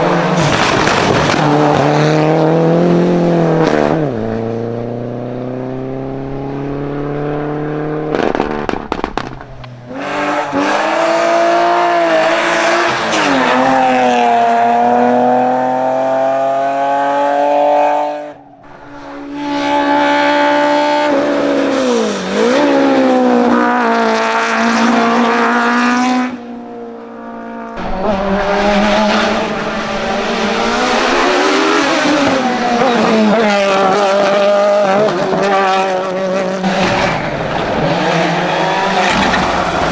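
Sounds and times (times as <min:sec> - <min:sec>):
race car engines revving: 0:00.0 - 0:39.9
tyre squeal: 0:36.7 - 0:39.9.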